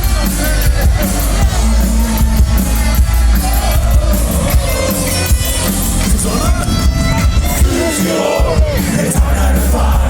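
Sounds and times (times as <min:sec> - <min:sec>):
crowd noise: 0:00.0 - 0:10.0
live rock band: 0:00.0 - 0:10.0
person singing: 0:07.5 - 0:10.0.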